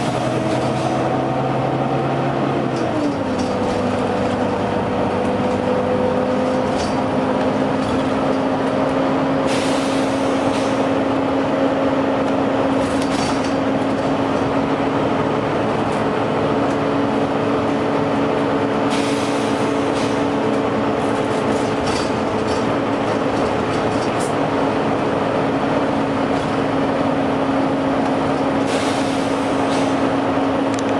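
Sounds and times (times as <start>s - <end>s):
bus cooling fan whine: 0.0s - 30.9s
bus engine running: 0.0s - 30.9s
air brake hisses: 9.4s - 10.9s, 18.9s - 20.2s, 28.6s - 30.0s.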